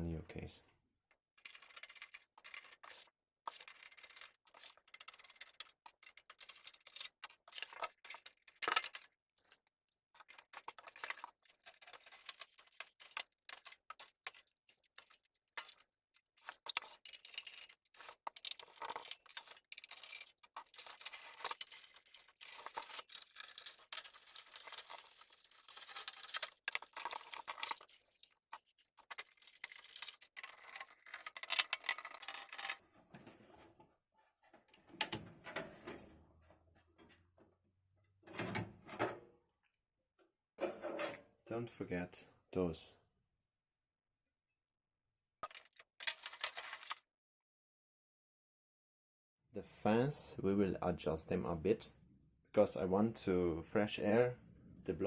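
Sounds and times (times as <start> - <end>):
computer parts clicking and scraping: 1.4 - 33.2, 45.4 - 47.0.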